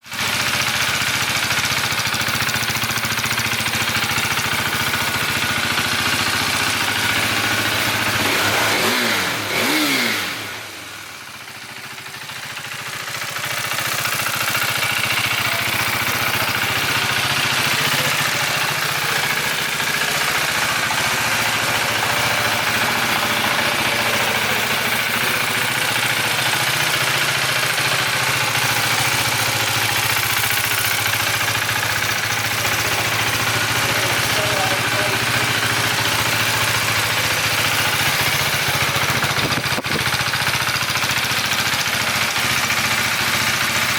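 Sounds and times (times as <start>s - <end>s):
motorcycle engine idling: 0.0s - 43.9s
motorcycle throttle blips: 11.9s - 42.0s.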